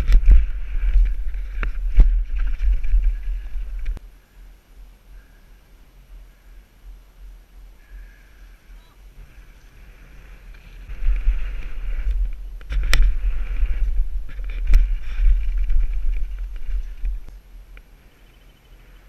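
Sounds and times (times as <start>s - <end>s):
wind buffeting microphone: 0.0s - 4.0s, 9.1s - 17.4s
bike tyre and trail noise: 0.0s - 19.0s.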